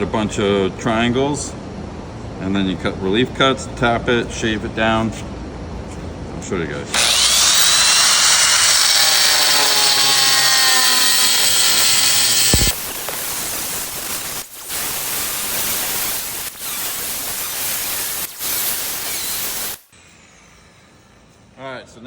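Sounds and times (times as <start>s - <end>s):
angle grinder cutting tile: 6.9s - 19.8s.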